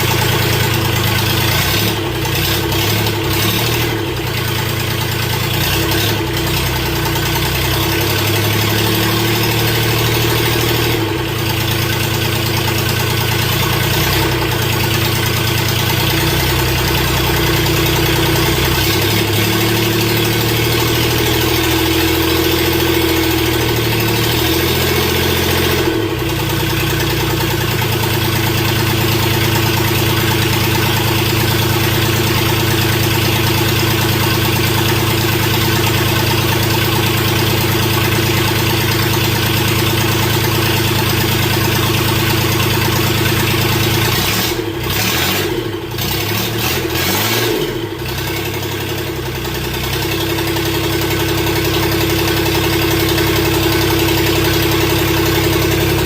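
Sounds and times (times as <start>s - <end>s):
diesel engine idling: 0.0s - 56.0s.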